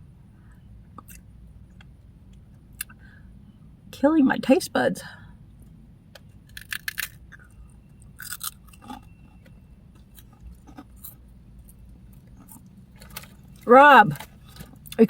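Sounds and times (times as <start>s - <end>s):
crunching and chewing snacks: 6.4s - 9.2s, 10.0s - 15.0s.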